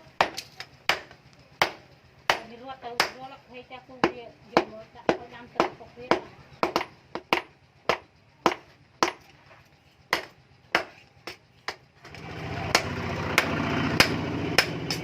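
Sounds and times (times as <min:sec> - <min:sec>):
motor-like drone: 0:00.0 - 0:15.0
hammer striking steel on anvil: 0:12.7 - 0:15.0.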